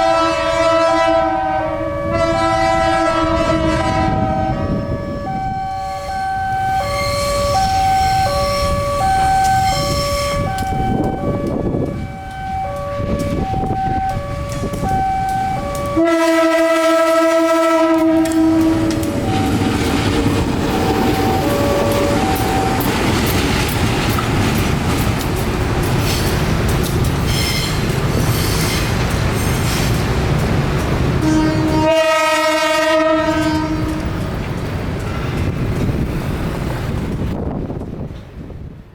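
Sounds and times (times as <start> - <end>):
locomotive horn blast: 0.0 - 19.9, 20.7 - 22.9, 31.2 - 34.2
locomotive and train running: 0.0 - 38.9.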